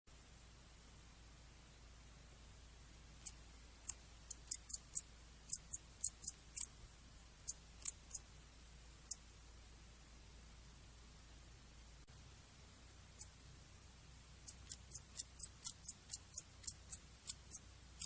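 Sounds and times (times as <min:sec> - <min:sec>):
katydid ticking call: 0:03.2 - 0:06.8, 0:07.4 - 0:08.3, 0:13.1 - 0:13.4, 0:14.4 - 0:18.0.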